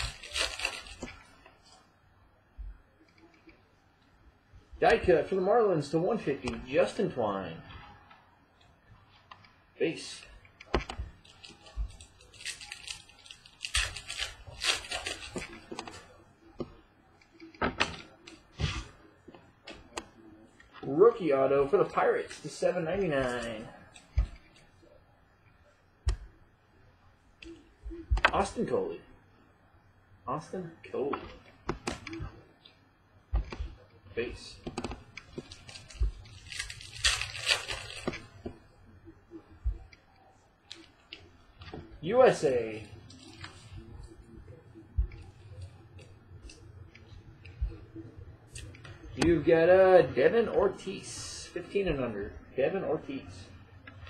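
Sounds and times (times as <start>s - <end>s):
wrappers crinkling: 0.0s - 1.4s, 11.1s - 15.7s, 35.4s - 38.4s.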